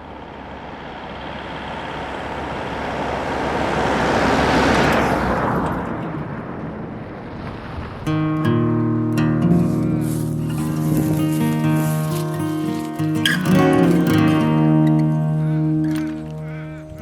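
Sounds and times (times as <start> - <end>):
vehicle driving past: 0.0 - 8.8.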